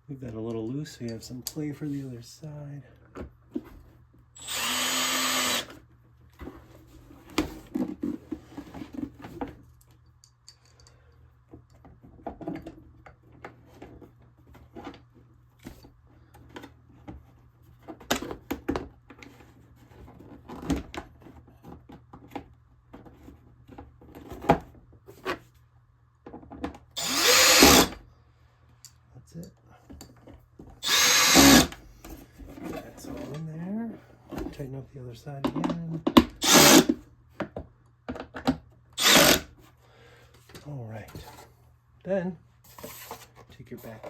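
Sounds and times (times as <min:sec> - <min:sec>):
cordless drill driving screw: 0:04.4 - 0:05.8, 0:27.0 - 0:28.0, 0:30.8 - 0:31.8, 0:36.4 - 0:37.0, 0:39.0 - 0:39.5
plastic parts clicking and knocking: 0:35.4 - 0:39.4.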